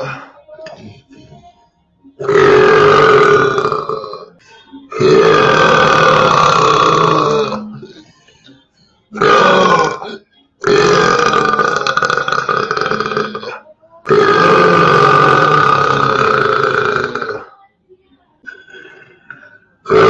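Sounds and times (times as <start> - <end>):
person belching loudly: 2.2 - 8.0, 9.1 - 17.6, 18.5 - 20.0.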